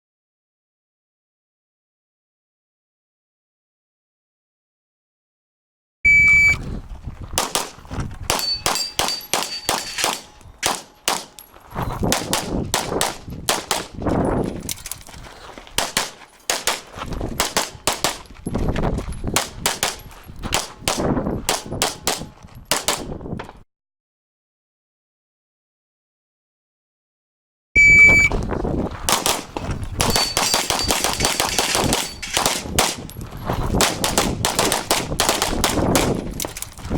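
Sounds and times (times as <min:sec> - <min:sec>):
shot timer beep: 0:06.1 - 0:06.6, 0:27.8 - 0:28.4
rapid pistol shots: 0:07.4 - 0:11.4, 0:12.1 - 0:14.0, 0:15.8 - 0:18.3, 0:19.4 - 0:23.1, 0:29.1 - 0:33.1, 0:33.7 - 0:36.2
steel targets ringing: 0:08.3 - 0:11.5, 0:30.0 - 0:32.4.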